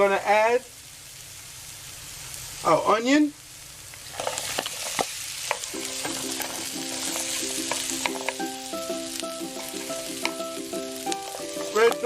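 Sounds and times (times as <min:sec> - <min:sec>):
onion sizzling in hot oil: 0:00.0 - 0:12.0
utensil clicking against pan: 0:04.4 - 0:08.5.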